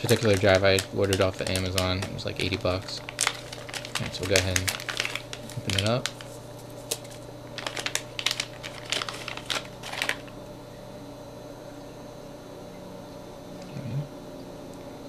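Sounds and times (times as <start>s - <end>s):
packaging clicks and crinkles: 0.0s - 10.4s
steady low hum: 0.0s - 15.0s.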